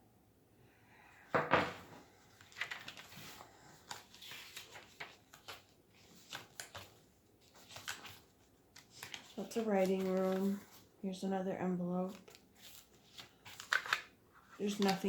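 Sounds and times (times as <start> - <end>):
paper pages rustling and crinkling: 2.0 - 11.0, 12.0 - 15.0.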